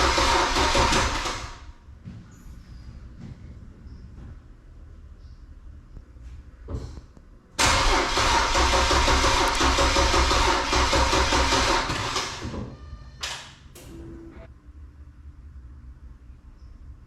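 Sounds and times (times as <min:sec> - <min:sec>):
car engine cranking on starter: 0:00.0 - 0:01.6, 0:07.6 - 0:12.4.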